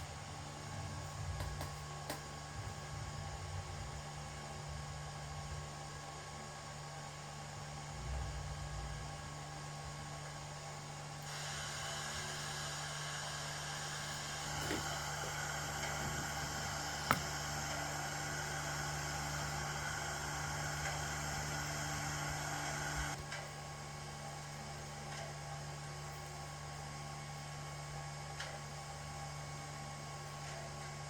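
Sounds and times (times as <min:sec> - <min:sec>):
model locomotive steam hiss and hum: 0:00.0 - 0:31.0.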